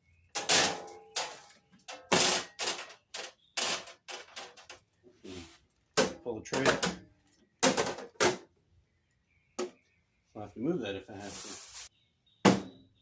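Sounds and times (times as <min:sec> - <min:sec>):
metal clanks on steel cart: 0:00.4 - 0:04.7.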